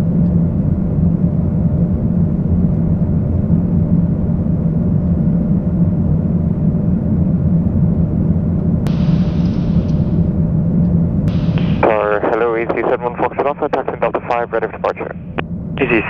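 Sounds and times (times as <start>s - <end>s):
constant low hum: 0.0s - 16.0s
airflow in cockpit: 0.2s - 16.0s
engine rumble: 8.9s - 16.0s.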